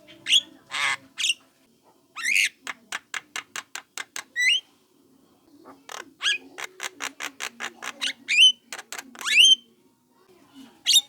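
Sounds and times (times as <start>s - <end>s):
bird harsh chattering calls: 5.9s - 9.6s.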